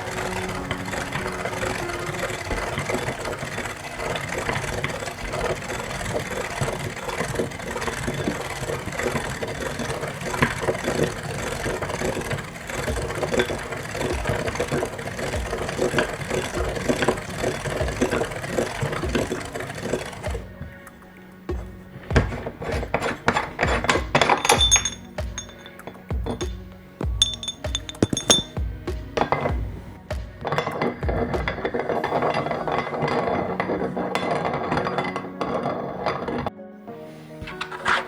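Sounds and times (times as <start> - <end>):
meat grinder motor hum: 0.0 - 20.5.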